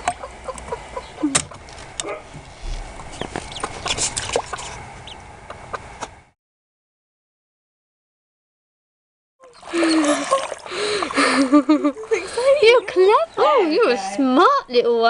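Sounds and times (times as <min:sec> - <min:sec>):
ducklings peeping: 0:00.0 - 0:06.1.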